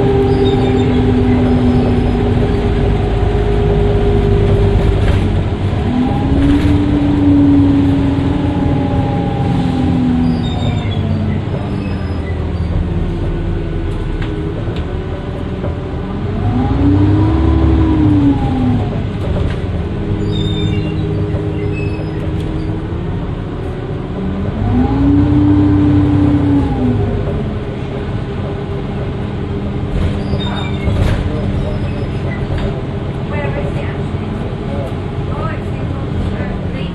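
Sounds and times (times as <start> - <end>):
bus diesel engine droning: 0.0 - 36.9.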